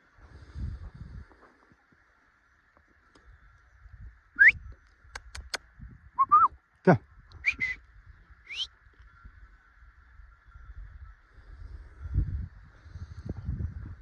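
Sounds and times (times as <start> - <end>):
sharp clicks: 5.2 - 5.6
downward-sweeping bird call: 8.4 - 9.3.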